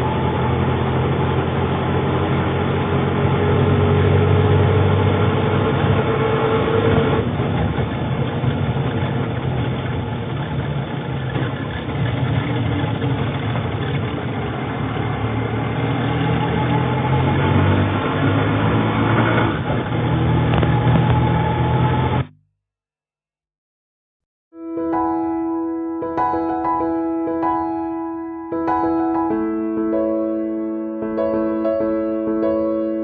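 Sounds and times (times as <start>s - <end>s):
auto rickshaw engine running: 0.0s - 22.4s.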